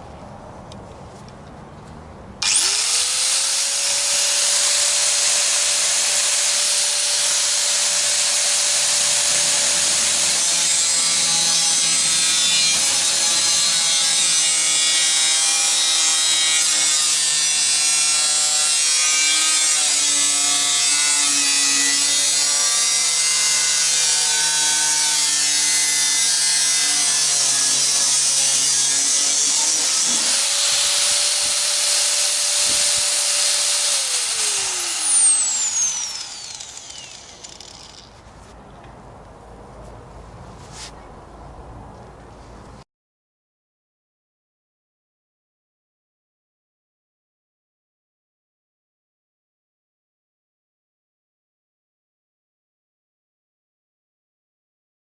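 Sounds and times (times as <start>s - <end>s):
power tool motor whine: 2.4s - 38.2s.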